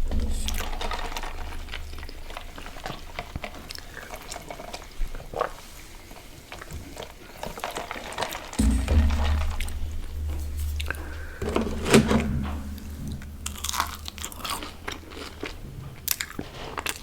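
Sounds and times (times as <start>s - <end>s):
low rumble: 8.6s - 15.3s.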